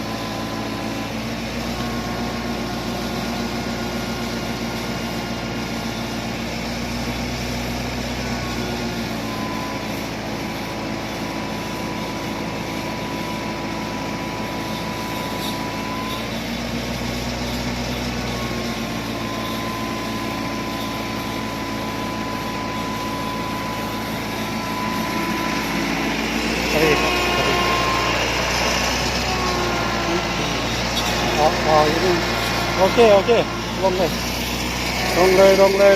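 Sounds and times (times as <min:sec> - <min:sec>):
engine running steadily: 0:00.0 - 0:35.9
high thin whine: 0:11.6 - 0:35.9.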